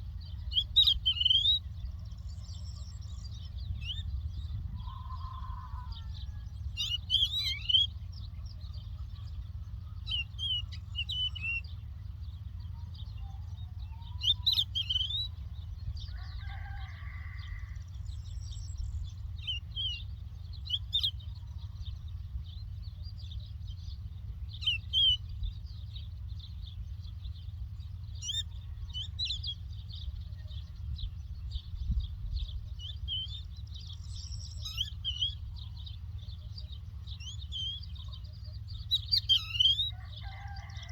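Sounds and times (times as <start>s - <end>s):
low rumble: 0.0s - 7.1s, 17.3s - 40.2s
larks twittering: 0.0s - 22.2s, 22.9s - 31.8s, 32.4s - 40.9s
lower bird call: 0.0s - 40.9s.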